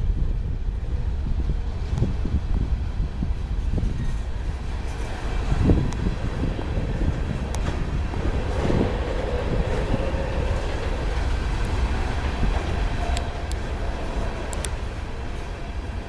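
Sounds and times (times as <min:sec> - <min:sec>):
train rumbling past: 0:00.0 - 0:16.0.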